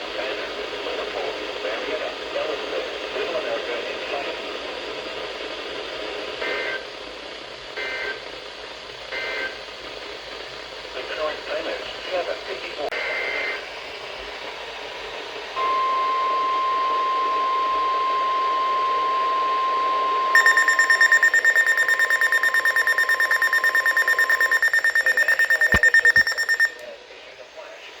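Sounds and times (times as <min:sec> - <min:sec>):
shrill fast beeping alarm: 0:15.6 - 0:26.8
steady alarm tone: 0:15.6 - 0:26.8
clicks: 0:20.4 - 0:26.9.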